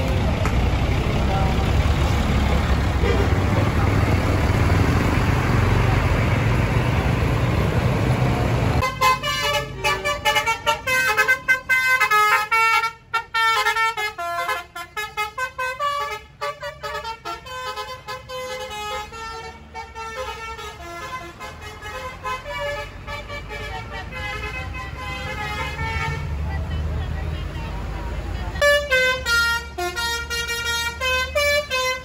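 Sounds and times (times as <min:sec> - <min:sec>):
loud noisy rumble: 0:00.0 - 0:10.9
bus horn playing a melody: 0:08.8 - 0:26.4, 0:28.6 - 0:32.0.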